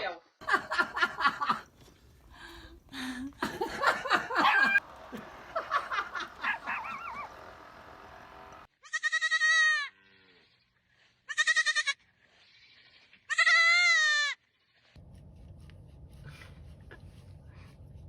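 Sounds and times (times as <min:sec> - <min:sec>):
animal bleating: 0:08.8 - 0:10.7, 0:11.3 - 0:14.9.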